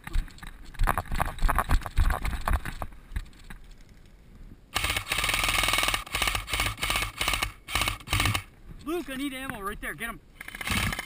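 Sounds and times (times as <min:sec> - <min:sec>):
airsoft gun firing bursts: 0:04.7 - 0:08.5, 0:10.4 - 0:11.0.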